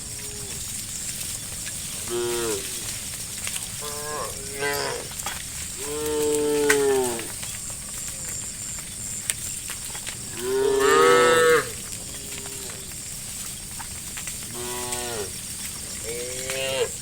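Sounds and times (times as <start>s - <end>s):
cows mooing: 0.0s - 0.7s, 2.0s - 3.0s, 3.8s - 7.4s, 10.2s - 13.0s, 14.5s - 17.0s.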